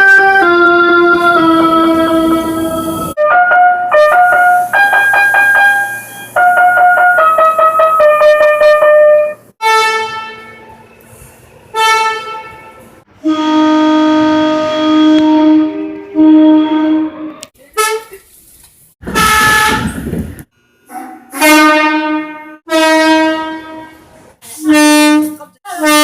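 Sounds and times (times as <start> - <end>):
electronic melody horn: 0.0 - 10.7, 11.8 - 17.4, 19.1 - 20.0, 21.3 - 24.0
sustained chord horn: 0.0 - 10.7, 11.7 - 17.4, 21.3 - 24.1
short train horn blasts: 0.0 - 10.8, 11.7 - 18.1, 19.1 - 20.0, 21.3 - 26.0.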